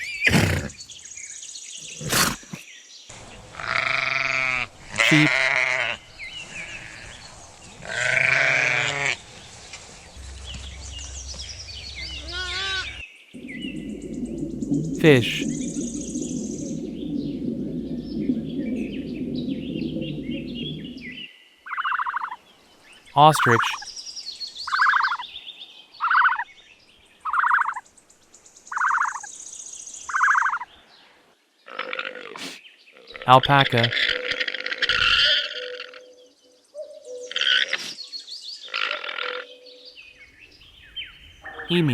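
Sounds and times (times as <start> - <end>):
low watery bubbling: 9.2 - 21.3.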